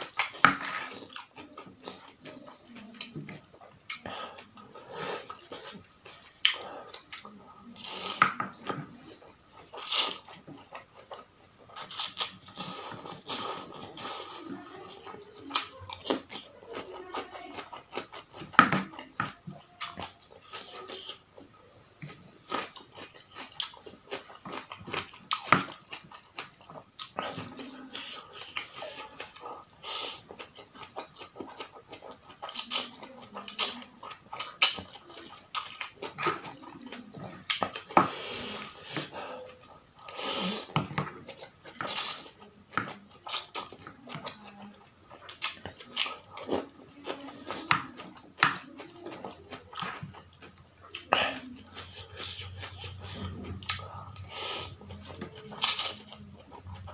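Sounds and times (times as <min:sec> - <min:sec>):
wet chewing and smacking: 0:00.0 - 0:56.9
slurping noodles: 0:40.0 - 0:40.8.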